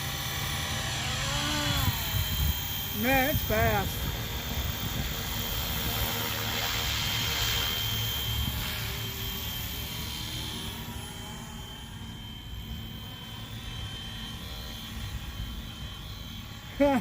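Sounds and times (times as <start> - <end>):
high motor whine: 0.0 - 17.0
rc helicopter rotor buzz: 0.0 - 17.0.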